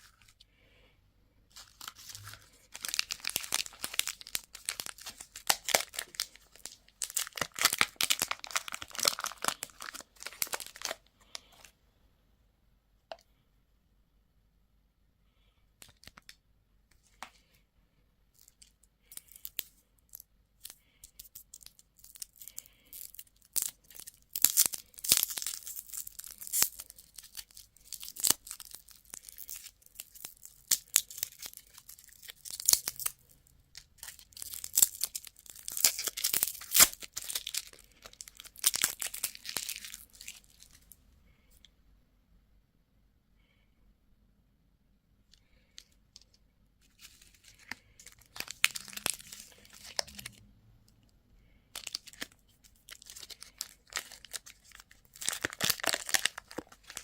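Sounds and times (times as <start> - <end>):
plastic wrapper tearing and crinkling: 1.5 - 11.7, 18.4 - 40.9, 46.2 - 50.4, 51.8 - 57.0.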